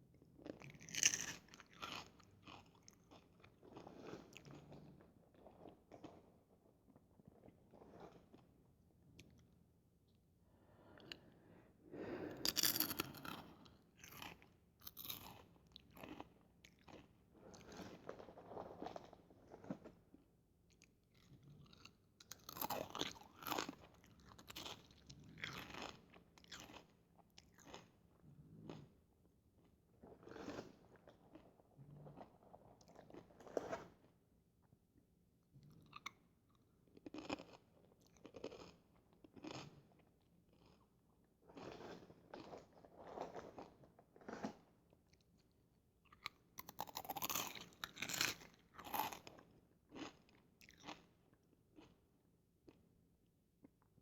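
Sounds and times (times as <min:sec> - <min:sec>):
corn chips crunching: 0:00.7 - 0:03.2, 0:12.4 - 0:13.4, 0:14.0 - 0:17.0, 0:22.3 - 0:26.8, 0:46.2 - 0:51.0.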